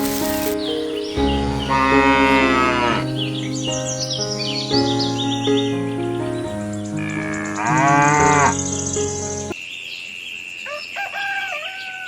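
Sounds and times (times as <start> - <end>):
gliding chirping calls: 0.0 - 9.6
music with held notes: 0.0 - 9.6
cow mooing: 1.7 - 3.1, 7.0 - 8.6.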